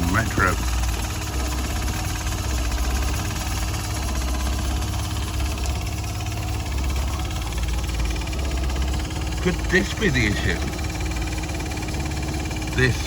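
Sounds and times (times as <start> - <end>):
person talking: 0.0 - 0.7, 9.4 - 10.8, 12.7 - 13.0
car engine idling roughly: 0.0 - 13.0.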